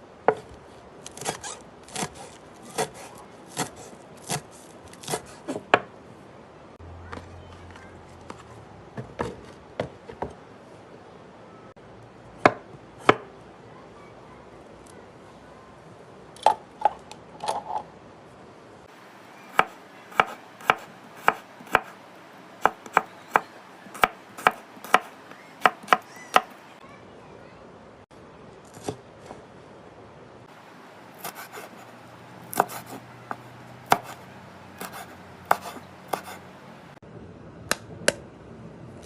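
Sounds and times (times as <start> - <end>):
knife chopping food: 1.2 - 5.3, 19.5 - 22.0, 22.6 - 26.6, 31.2 - 36.6.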